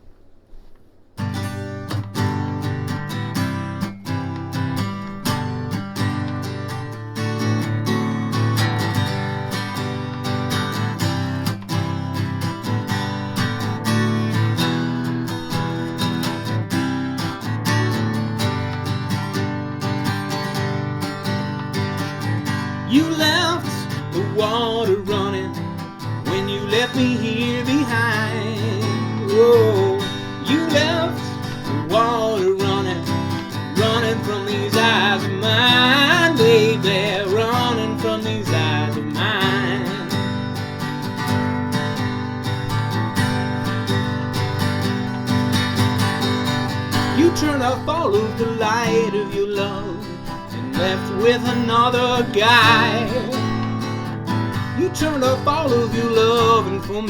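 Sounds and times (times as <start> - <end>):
strummed acoustic guitar: 0.5 - 57.0
wavering wordless vocal: 22.9 - 40.4, 47.1 - 53.8, 54.6 - 57.0.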